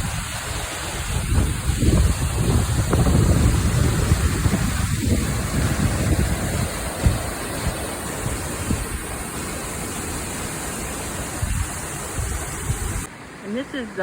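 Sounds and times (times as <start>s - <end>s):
wind buffeting microphone: 0.0s - 9.4s, 11.2s - 13.1s
waterfall rushing: 0.0s - 14.0s.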